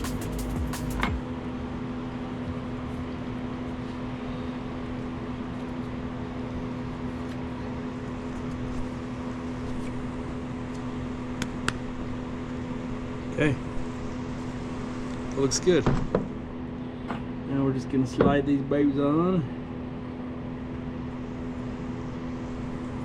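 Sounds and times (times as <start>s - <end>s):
machine hum: 0.0s - 3.4s.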